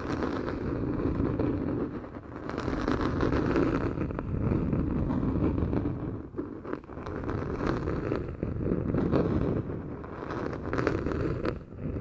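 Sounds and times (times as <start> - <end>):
hands rubbing on microphone: 0.0 - 12.0.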